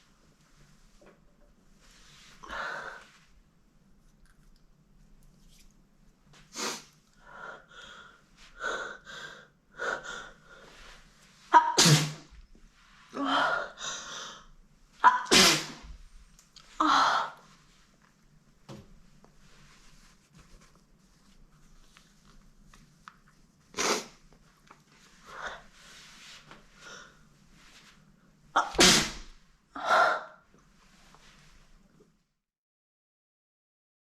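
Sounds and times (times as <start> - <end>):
woman sneezing: 11.5 - 12.3, 15.0 - 15.9, 28.6 - 30.3.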